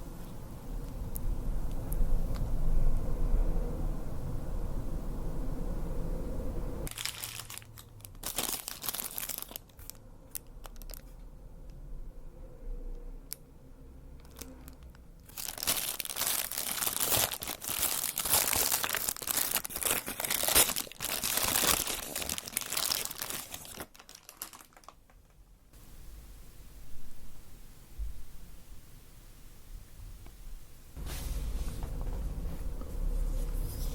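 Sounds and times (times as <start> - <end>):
low background rumble: 0.0 - 20.2, 20.8 - 33.9
paper wrapping crinkling: 6.8 - 11.2, 14.2 - 25.4.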